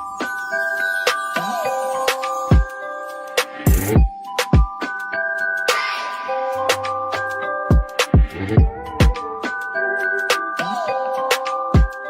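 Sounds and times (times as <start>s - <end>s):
bell-like mallet melody: 0.0s - 12.0s
steady drum beat: 7.7s - 9.2s.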